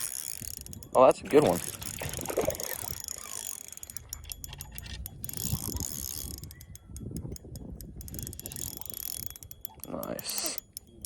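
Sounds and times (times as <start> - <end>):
low rumbling handling noise: 0.0 - 9.7
fishing reel clicking: 0.0 - 11.0.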